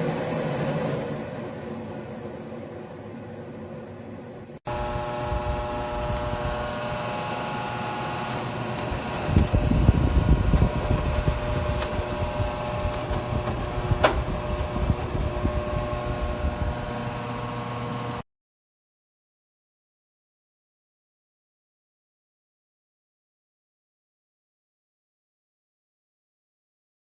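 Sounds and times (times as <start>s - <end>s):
humidifier fan hum: 0.0s - 18.2s.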